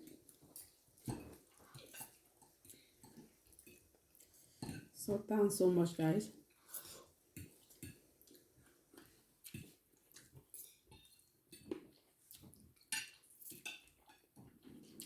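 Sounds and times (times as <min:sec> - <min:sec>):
cutlery clinking on plates: 0:06.7 - 0:08.0, 0:09.5 - 0:12.0, 0:12.7 - 0:15.0.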